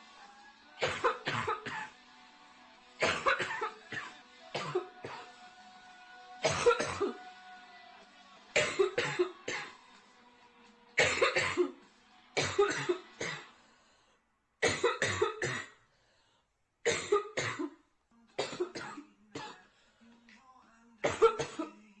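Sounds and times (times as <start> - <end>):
girl coughing: 0.8 - 1.9, 3.0 - 5.2, 6.4 - 7.2, 8.6 - 9.7, 11.0 - 11.7, 12.4 - 13.4, 14.6 - 15.8, 16.9 - 17.8, 18.4 - 19.6, 21.1 - 21.7.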